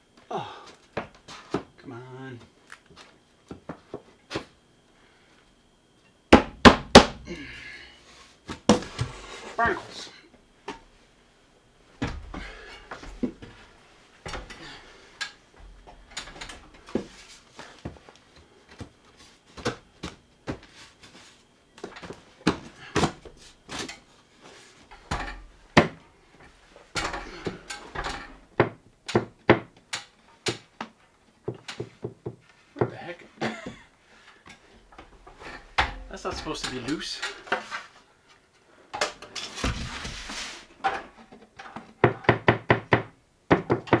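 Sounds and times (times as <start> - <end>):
heavy wooden thumps: 6.4 - 7.4
boards knocking and clicking: 41.2 - 44.0.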